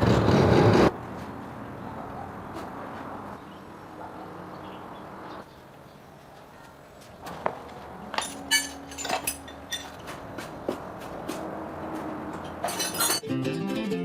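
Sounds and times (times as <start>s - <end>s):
metallic clinks and knocks: 8.1s - 10.2s, 12.4s - 13.2s
guitar music: 13.2s - 14.0s.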